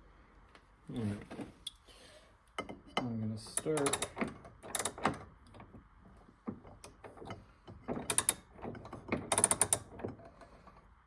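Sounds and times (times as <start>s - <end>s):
clamp ratcheting clicks: 3.6s - 5.6s, 7.9s - 10.2s.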